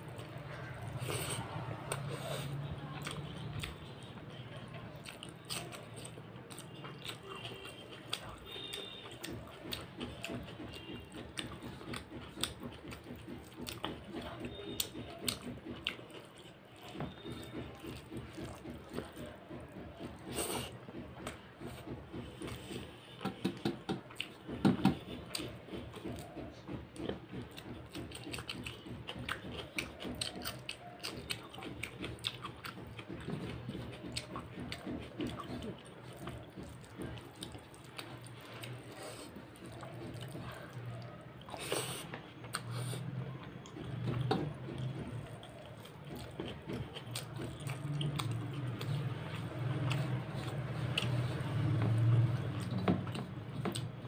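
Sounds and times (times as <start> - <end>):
chewing and biting food: 0.0 - 54.0.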